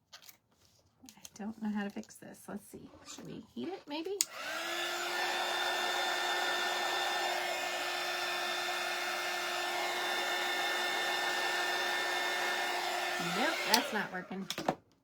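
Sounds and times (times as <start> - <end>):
heat tool blowing air: 4.2 - 14.5.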